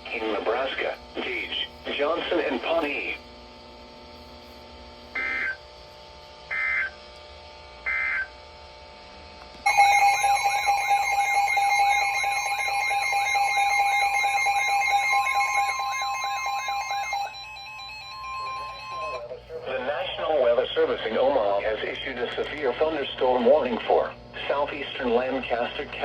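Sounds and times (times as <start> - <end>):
electronic data bursts: 5.2 - 5.6, 6.5 - 7.0, 7.8 - 8.3, 9.7 - 19.3
warbling electronic alarm: 5.2 - 5.6, 6.5 - 7.0, 7.8 - 8.4, 9.6 - 19.3
steady high tone: 9.6 - 20.3.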